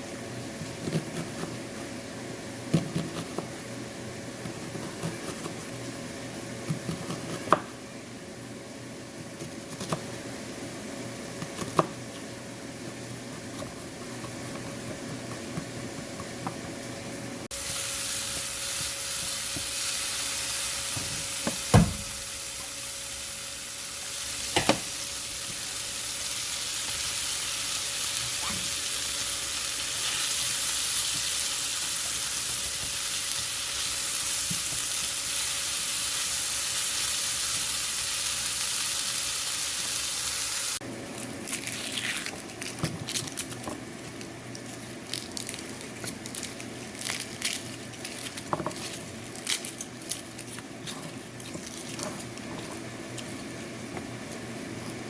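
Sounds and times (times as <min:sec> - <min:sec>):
food sizzling in a hot pan: 0:17.5 - 0:40.8.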